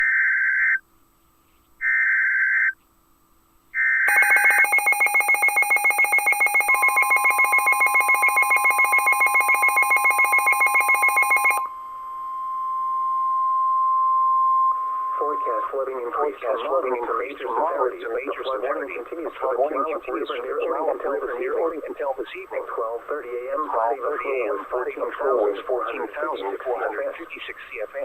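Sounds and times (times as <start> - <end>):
steady warning alarm tone: 4.1 - 21.6.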